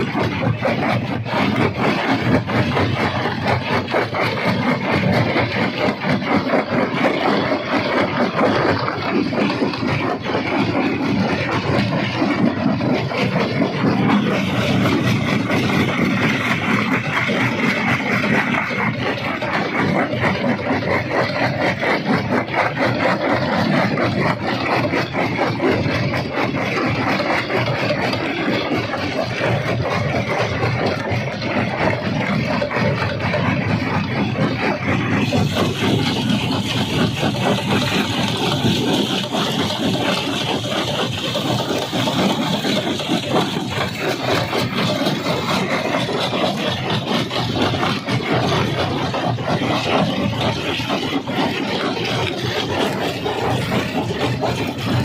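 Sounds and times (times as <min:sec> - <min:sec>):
heavy machine drone: 0:00.0 - 0:55.0
dense rattling: 0:23.4 - 0:55.0.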